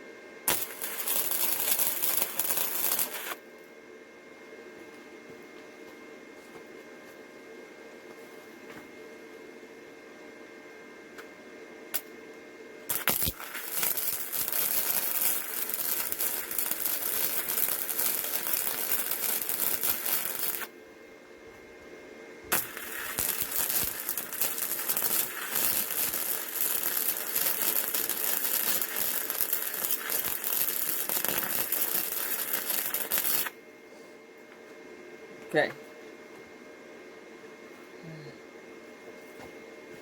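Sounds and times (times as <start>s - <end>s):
welder arc crackling sizzle: 0.0s - 3.7s, 11.9s - 12.2s, 12.8s - 33.6s.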